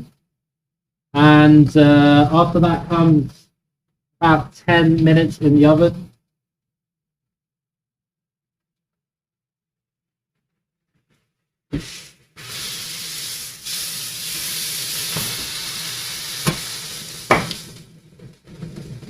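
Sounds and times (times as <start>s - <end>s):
meat sizzling in hot oil: 11.8s - 17.9s.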